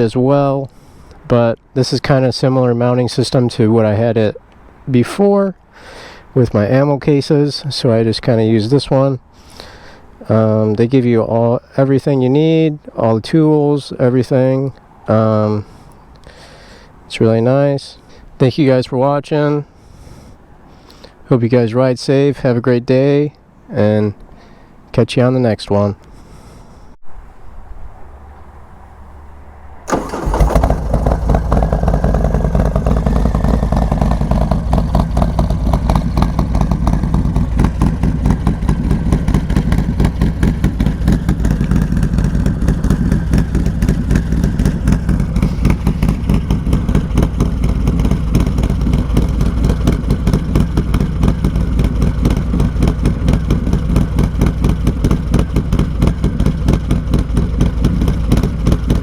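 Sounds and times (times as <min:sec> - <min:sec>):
motorcycle starting and idling: 0:29.9 - 0:59.0.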